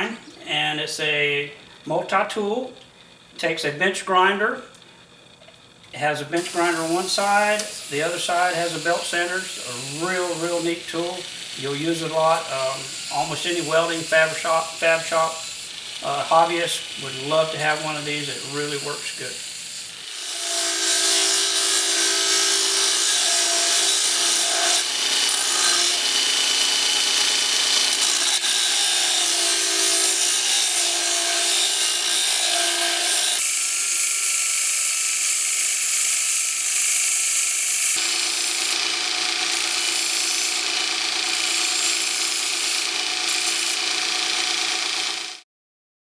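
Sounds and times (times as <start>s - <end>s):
abrasive hiss of grinding metal: 6.4s - 27.5s
grinder motor tone: 6.4s - 34.9s, 36.7s - 45.4s.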